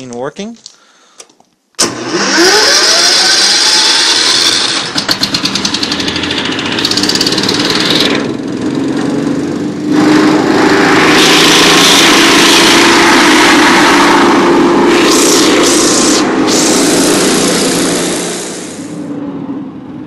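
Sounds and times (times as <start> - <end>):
industrial vacuum motor whine: 1.8 - 20.0
rushing air: 9.6 - 19.6.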